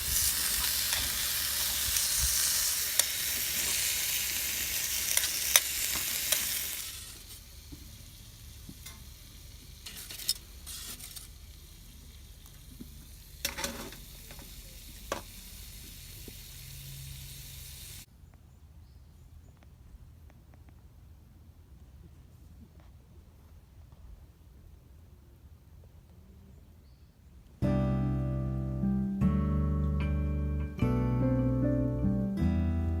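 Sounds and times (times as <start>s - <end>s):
meat sizzling in a skillet: 0.0s - 18.1s.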